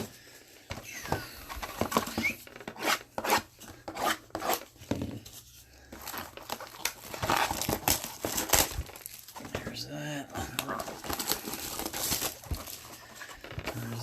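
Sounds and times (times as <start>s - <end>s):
plastic wrapping tearing and crumpling: 5.9s - 14.0s.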